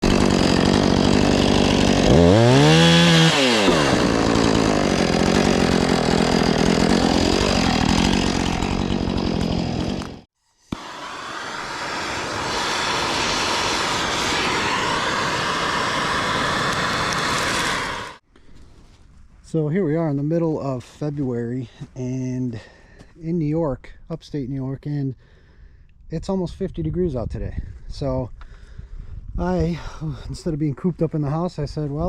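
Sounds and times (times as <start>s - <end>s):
chainsaw cutting wood: 0.0s - 18.2s.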